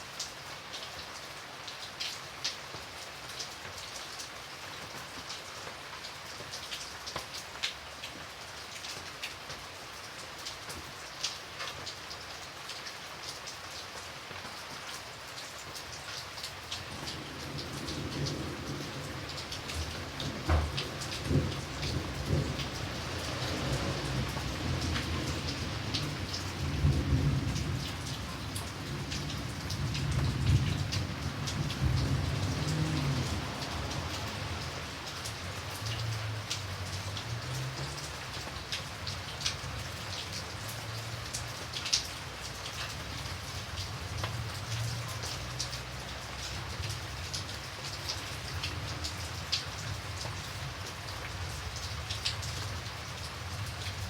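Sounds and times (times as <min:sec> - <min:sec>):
raindrops ticking on a surface: 0:00.0 - 0:54.0
steady rain: 0:00.0 - 0:54.0
low thunder rumble: 0:17.1 - 0:34.6.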